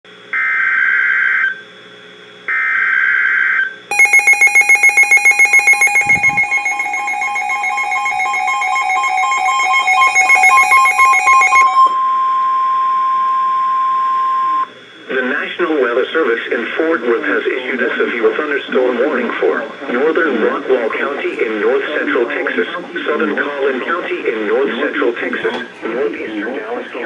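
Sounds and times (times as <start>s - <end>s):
warbling digital header bursts: 3.9s - 11.9s
pulsing electronic alarm: 3.9s - 14.7s
steady single-pitch attention tone: 3.9s - 14.7s.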